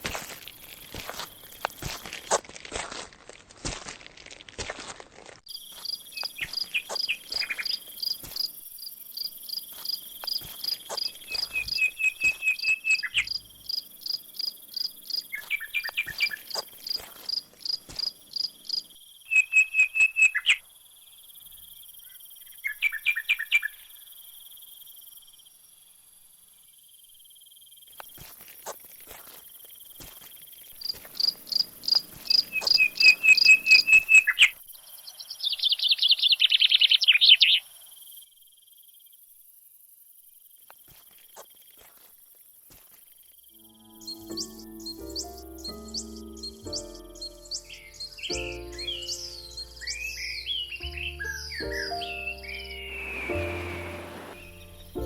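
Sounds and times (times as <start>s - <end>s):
crickets chirping: 0.0s - 2.4s, 5.5s - 55.0s
faint high whine: 52.7s - 55.0s.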